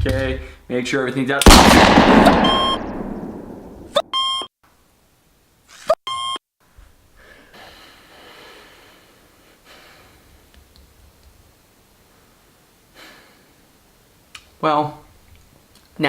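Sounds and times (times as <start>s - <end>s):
pistol shot reverberation: 1.4s - 4.0s
short electronic beeps: 2.4s - 2.9s, 4.0s - 4.5s, 6.0s - 6.4s.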